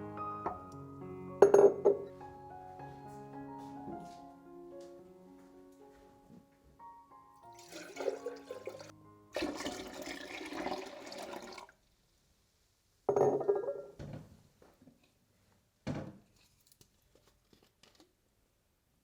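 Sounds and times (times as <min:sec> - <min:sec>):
soft piano music: 0:00.0 - 0:10.6.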